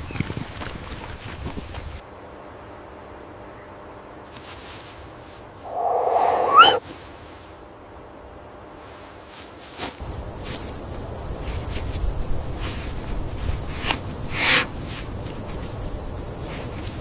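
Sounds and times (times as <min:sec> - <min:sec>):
animal call rising in pitch: 0:05.6 - 0:06.8
high-pitched insect chorus: 0:05.7 - 0:06.8, 0:10.0 - 0:17.0
low rumble: 0:05.7 - 0:06.8.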